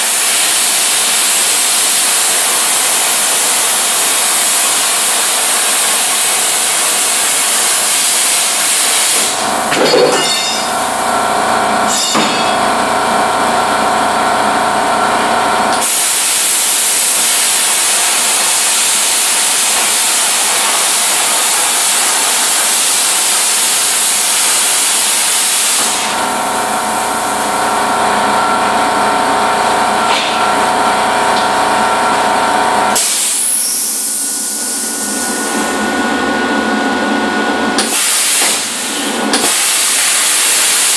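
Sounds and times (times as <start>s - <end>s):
plasma arc buzzing: 0.0s - 11.1s, 15.7s - 27.7s, 32.9s - 35.9s, 37.8s - 40.9s
compressed air hissing: 15.8s - 26.2s, 33.0s - 35.2s.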